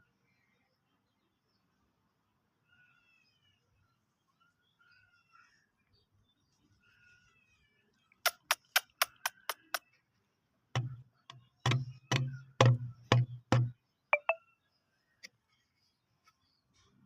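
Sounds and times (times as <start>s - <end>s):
heavy hollow knocks: 10.8s - 13.8s.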